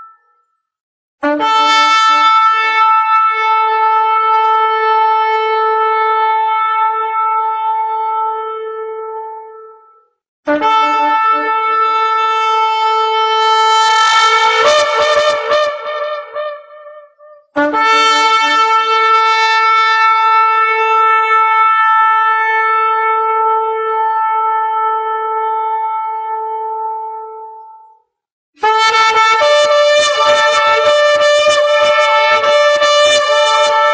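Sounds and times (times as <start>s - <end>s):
shofar blasts: 1.2s - 9.8s, 10.5s - 27.5s, 28.6s - 33.9s.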